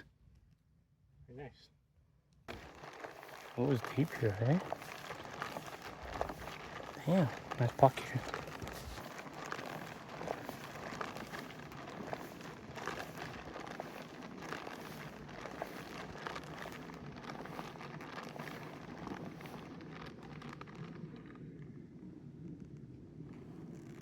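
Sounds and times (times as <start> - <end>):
footsteps crunching over rocks: 2.5 - 21.3.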